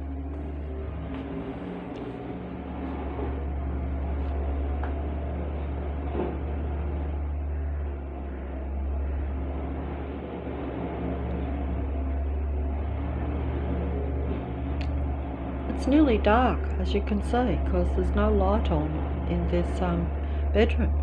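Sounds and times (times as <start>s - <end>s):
low mechanical hum: 0.0s - 21.0s.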